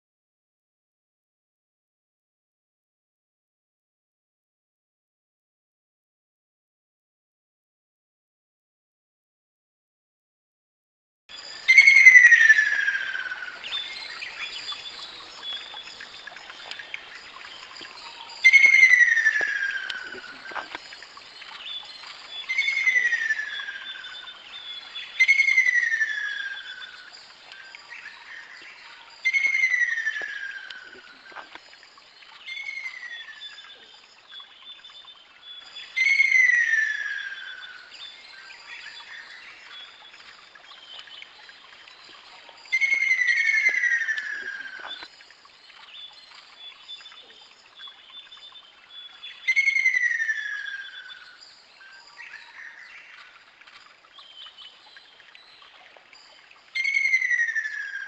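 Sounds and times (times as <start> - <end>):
kingfisher calling: 11.6 - 20.9, 22.4 - 27.0, 27.6 - 31.6, 42.7 - 45.1.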